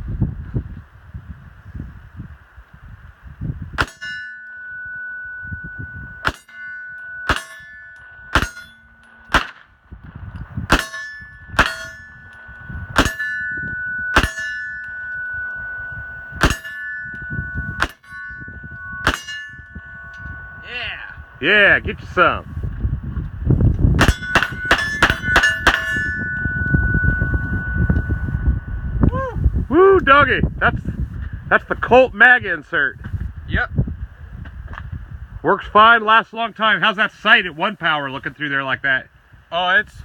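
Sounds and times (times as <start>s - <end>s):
steel targets ringing: 3.7s - 22.6s, 23.9s - 29.1s
pistol shots: 9.3s - 9.7s.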